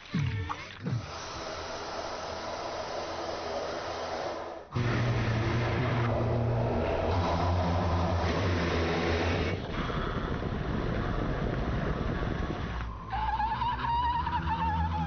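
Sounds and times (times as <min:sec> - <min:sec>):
car engine drone: 0:04.7 - 0:15.0.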